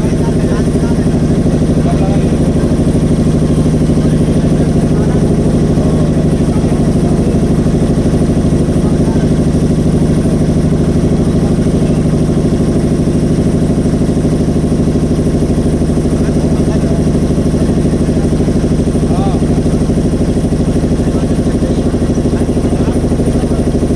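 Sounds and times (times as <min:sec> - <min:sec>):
motorboat engine running: 0:00.0 - 0:23.9.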